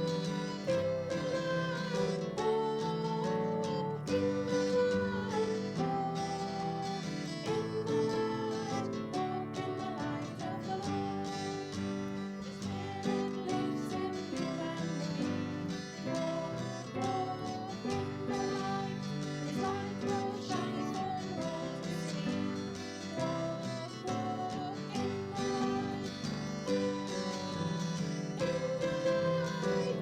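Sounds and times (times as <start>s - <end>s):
acoustic guitar music: 0.0s - 30.0s.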